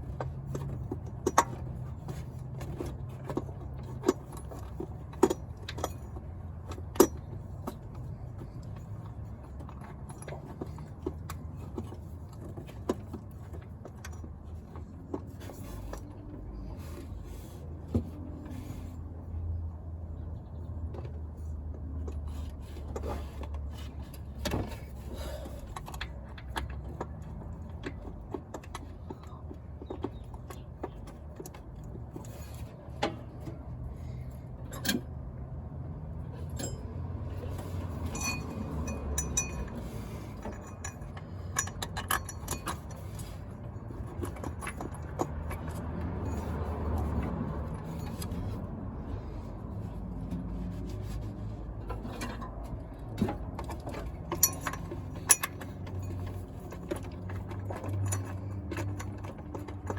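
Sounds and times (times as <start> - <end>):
metallic clinks of hand tools: 38.0 - 43.4, 54.3 - 56.9.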